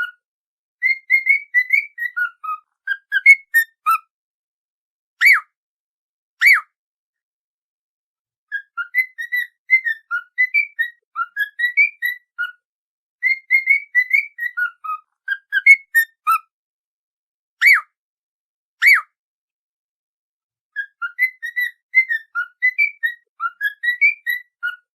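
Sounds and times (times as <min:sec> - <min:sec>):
whistled melody: 0:00.8 - 0:04.1, 0:05.2 - 0:05.6, 0:06.4 - 0:06.8, 0:08.5 - 0:12.6, 0:13.2 - 0:16.5, 0:17.6 - 0:18.0, 0:18.8 - 0:19.2, 0:20.8 - 0:24.9.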